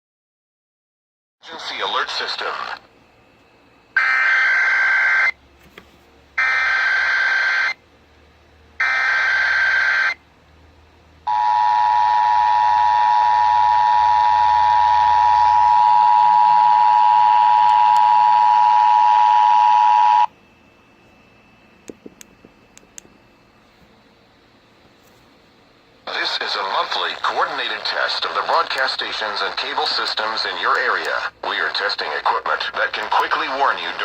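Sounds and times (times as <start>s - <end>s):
warbling data tone bursts: 6.4s - 7.8s, 8.8s - 10.2s.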